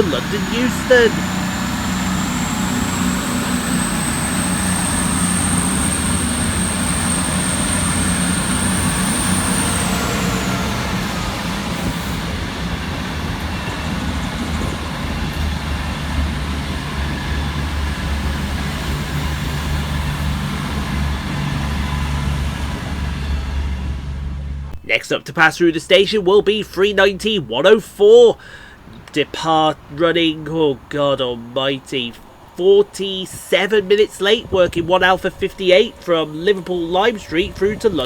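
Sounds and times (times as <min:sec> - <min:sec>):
high thin whine: 0:00.0 - 0:12.4
diesel train engines running: 0:00.0 - 0:38.0.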